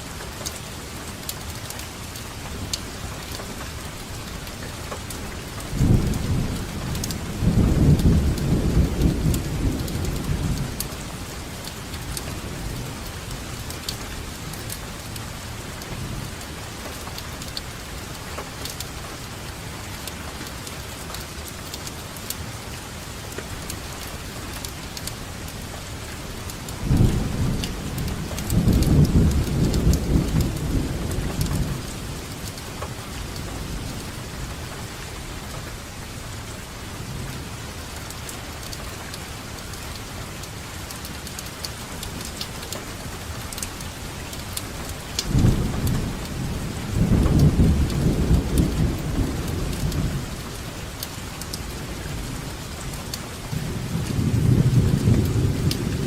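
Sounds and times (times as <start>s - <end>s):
raindrops pattering: 0.0s - 56.0s
steady rainfall: 0.0s - 56.0s
thunder rumbling: 26.7s - 34.1s, 45.1s - 51.0s, 51.6s - 56.0s.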